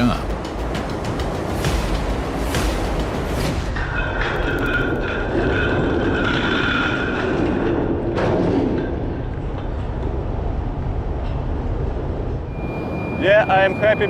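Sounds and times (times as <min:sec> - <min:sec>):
low rumble of heavy machinery: 0:03.7 - 0:14.0
high whine: 0:12.1 - 0:14.0.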